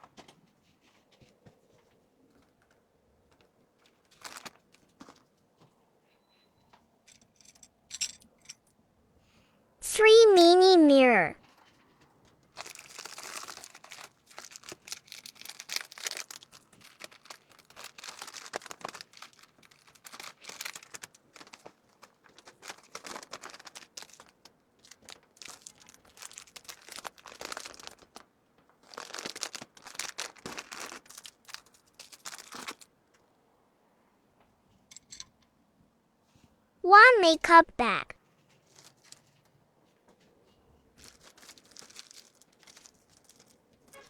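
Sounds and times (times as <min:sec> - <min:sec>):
plastic packaging crinkling: 0:03.8 - 0:05.2, 0:12.5 - 0:32.9, 0:38.6 - 0:39.3, 0:41.0 - 0:44.0.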